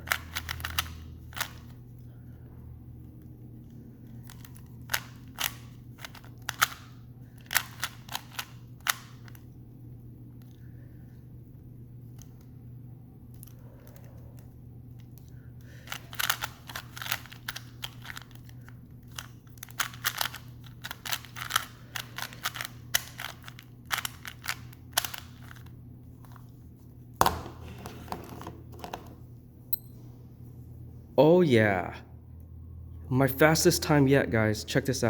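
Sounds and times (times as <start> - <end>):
puzzle cube clicking turns: 0.0 - 1.8, 4.0 - 9.5, 13.3 - 25.7
low steady hum: 0.0 - 35.0.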